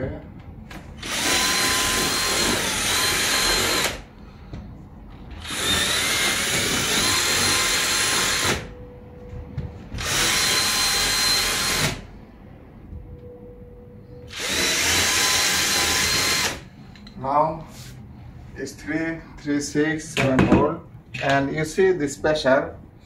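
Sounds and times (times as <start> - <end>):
electric drill boring into wall: 1.0 - 4.1, 5.4 - 8.7, 10.0 - 12.0, 14.3 - 16.6.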